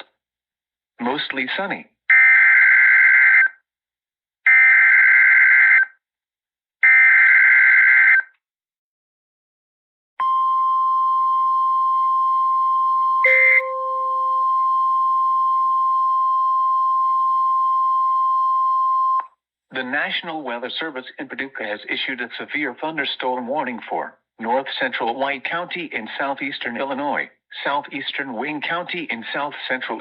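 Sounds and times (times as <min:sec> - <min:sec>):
short lower blip: 0:13.2 - 0:14.4
steady warning alarm tone: 0:13.2 - 0:14.8.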